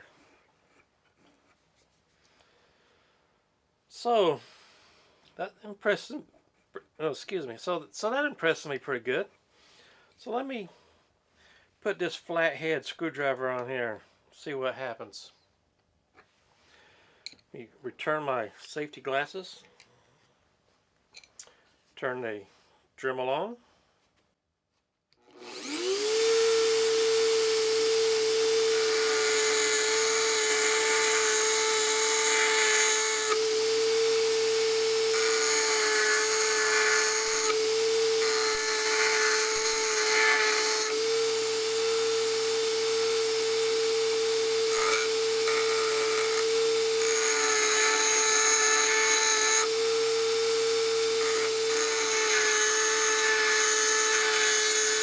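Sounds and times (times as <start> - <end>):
rotary tool whining: 25.2 - 55.0
grinding stone grinding metal: 25.4 - 55.0.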